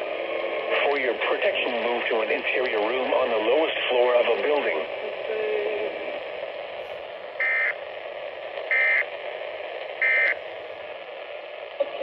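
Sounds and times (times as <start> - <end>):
radio static: 0.0 - 12.0
buzzy digital data bursts: 7.4 - 7.8, 8.7 - 9.1, 10.0 - 10.5.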